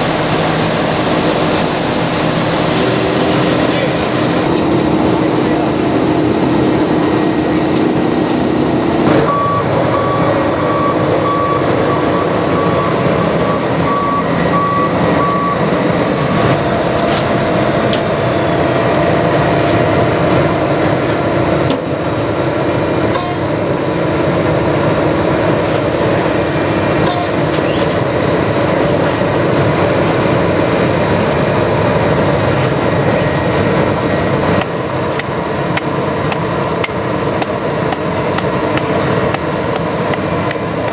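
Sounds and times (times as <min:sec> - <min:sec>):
paving machinery diesel drone: 0:00.0 - 0:40.9
backup alarm beeping: 0:09.2 - 0:16.6.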